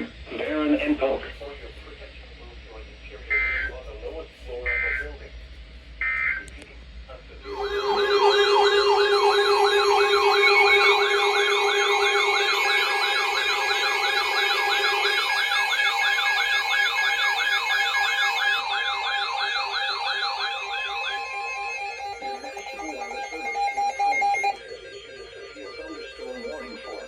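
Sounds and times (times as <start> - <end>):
steady alert tones: 7.4 - 22.0
electronic warning siren yelping: 7.4 - 27.0
lower steady tone: 7.4 - 27.0.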